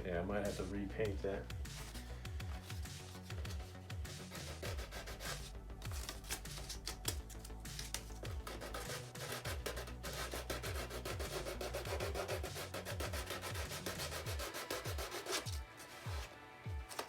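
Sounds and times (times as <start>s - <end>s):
sandpaper rubbing: 1.6s - 17.0s.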